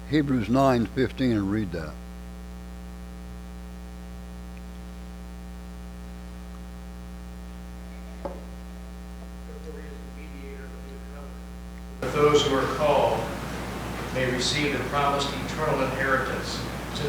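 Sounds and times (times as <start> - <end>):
electrical mains hum: 0.0 - 17.0
faint distant voice: 12.0 - 17.0.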